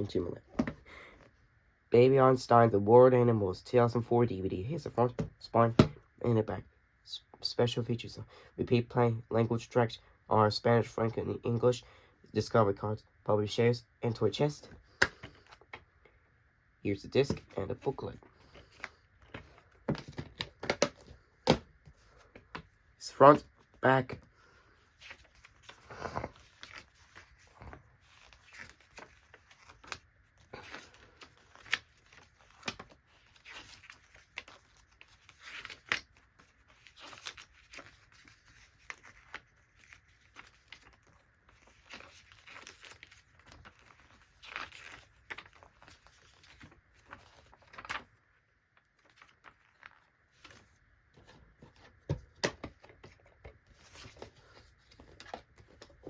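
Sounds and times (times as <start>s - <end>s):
paper rustling and crinkling: 24.7s - 56.0s.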